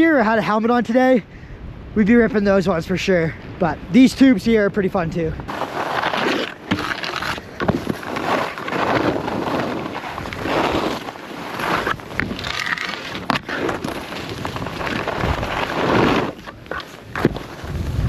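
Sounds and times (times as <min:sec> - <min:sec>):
skis scraping over snow: 0:05.5 - 0:18.0
wind buffeting microphone: 0:06.8 - 0:18.0.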